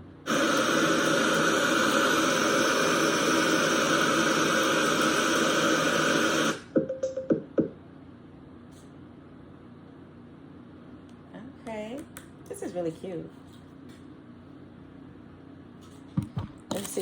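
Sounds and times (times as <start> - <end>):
radio static hissing: 0.3 - 6.7.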